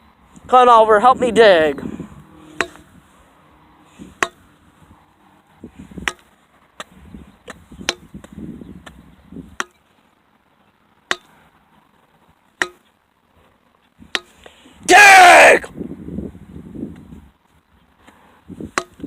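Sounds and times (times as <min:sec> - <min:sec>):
digging tool striking ground: 0:02.5 - 0:02.9, 0:04.0 - 0:04.5, 0:06.0 - 0:09.0, 0:11.1 - 0:11.4, 0:12.6 - 0:12.9, 0:18.7 - 0:19.0.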